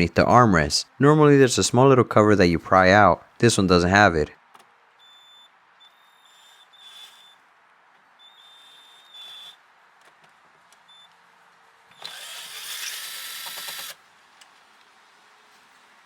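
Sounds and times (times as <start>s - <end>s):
cordless drill running: 12.0s - 14.0s.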